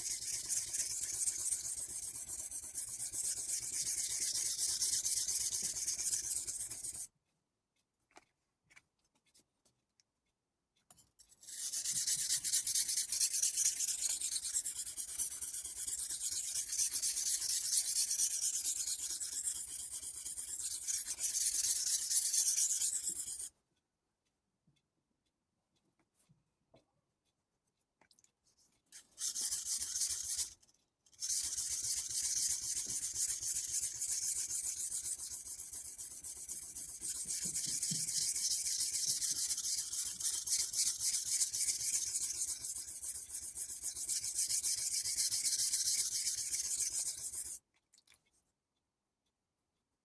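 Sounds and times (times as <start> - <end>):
knife scraping on whetstone: 0.1 - 7.0, 11.4 - 23.5, 31.2 - 47.6.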